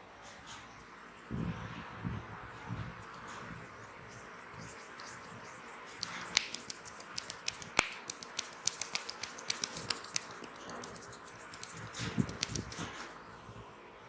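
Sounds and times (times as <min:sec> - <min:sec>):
clicks and snaps from massage: 0:04.7 - 0:12.9.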